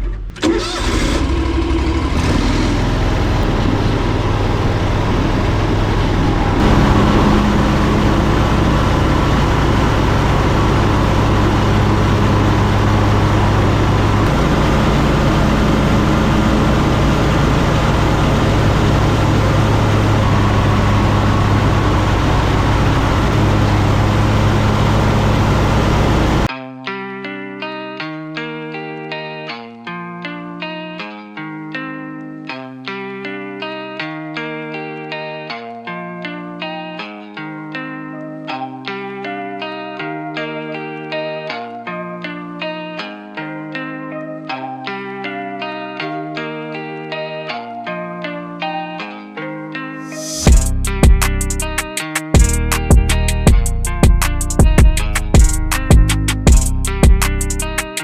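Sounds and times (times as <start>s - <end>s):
mower engines droning: 0.4s - 26.5s.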